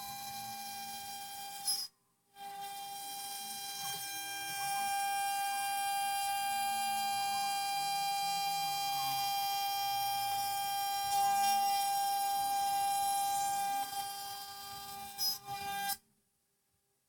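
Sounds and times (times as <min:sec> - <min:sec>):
router spindle whining: 0:02.4 - 0:15.6.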